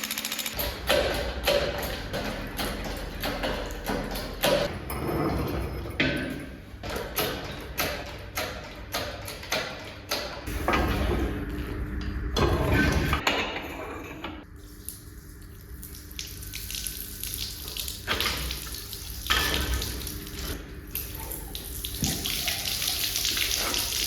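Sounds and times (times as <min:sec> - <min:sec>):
metal knocks and clanks: 0:00.5 - 0:11.4.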